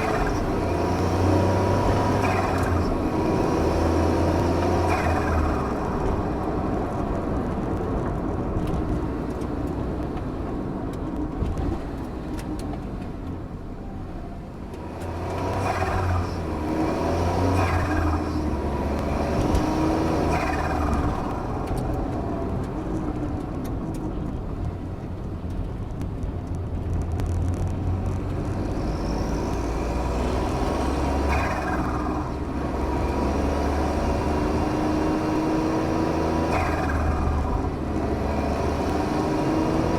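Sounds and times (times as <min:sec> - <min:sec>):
turbocharged engine running: 0:00.0 - 0:13.8, 0:14.6 - 0:39.9
blow-off valve and turbo flutter: 0:15.5 - 0:21.7.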